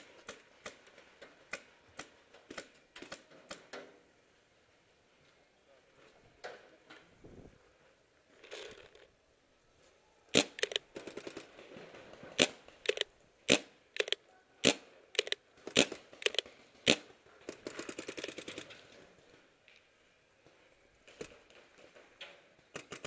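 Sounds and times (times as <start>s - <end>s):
paintball markers firing: 10.4s - 11.5s, 12.4s - 18.8s, 22.7s - 23.0s.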